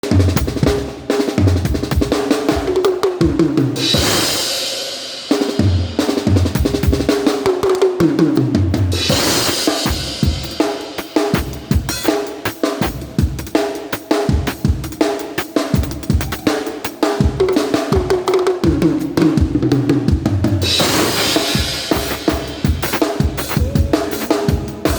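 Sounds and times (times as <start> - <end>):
kick and snare beat: 0.0 - 4.5, 5.4 - 24.9
cymbal crash: 3.8 - 6.0, 20.6 - 24.9.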